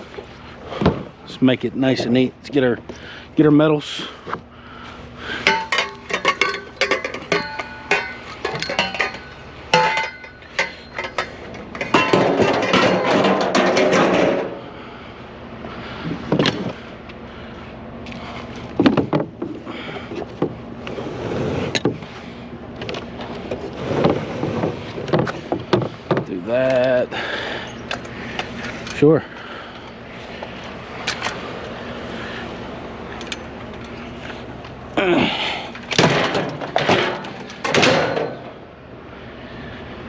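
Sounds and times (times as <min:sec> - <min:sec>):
metal rattling scrape: 0:05.3 - 0:14.7
metal scrap clanking: 0:05.3 - 0:14.7, 0:35.8 - 0:38.7.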